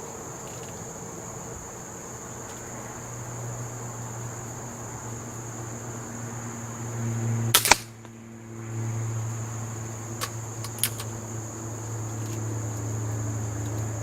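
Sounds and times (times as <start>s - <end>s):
air pistol shot: 7.5s - 8.0s
light clicks: 10.2s - 11.2s.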